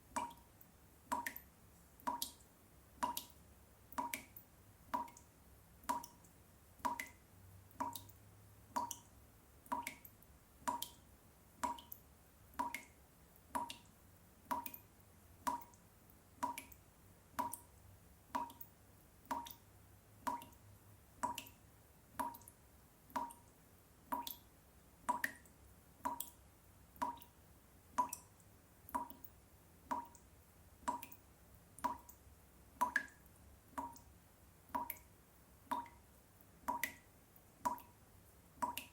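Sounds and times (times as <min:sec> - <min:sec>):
tap dripping: 0:00.2 - 0:00.4, 0:01.1 - 0:02.4, 0:03.0 - 0:05.2, 0:05.8 - 0:07.2, 0:07.8 - 0:09.1, 0:09.7 - 0:10.1, 0:11.6 - 0:12.9, 0:16.4 - 0:16.8, 0:17.4 - 0:17.7, 0:18.4 - 0:19.6, 0:25.1 - 0:26.4, 0:27.0 - 0:27.3, 0:31.8 - 0:32.2, 0:32.8 - 0:33.2, 0:34.7 - 0:35.1, 0:36.7 - 0:37.0.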